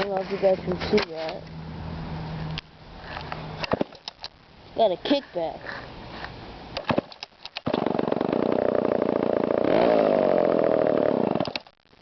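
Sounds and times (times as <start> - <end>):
chainsaw engine running: 7.7 - 11.4.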